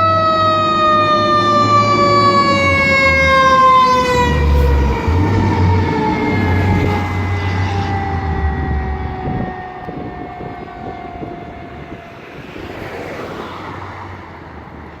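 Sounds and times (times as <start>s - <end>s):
fire engine siren: 0.0s - 15.0s.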